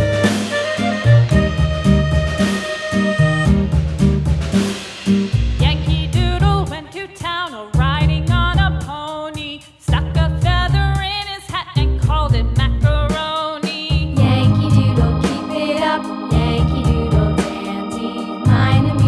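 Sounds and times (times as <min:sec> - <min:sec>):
upbeat song with bass beat: 0:00.0 - 0:19.0.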